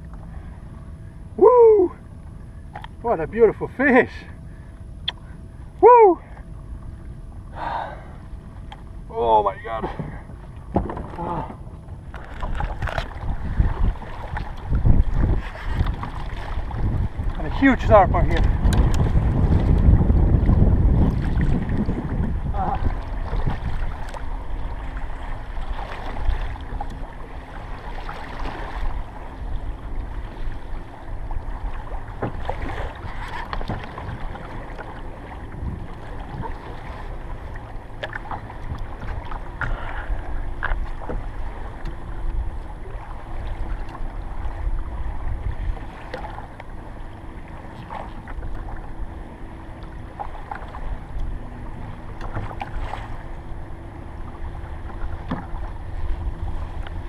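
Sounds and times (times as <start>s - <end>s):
water lapping against hull: 0.0s - 57.0s
wind on microphone: 9.8s - 46.6s.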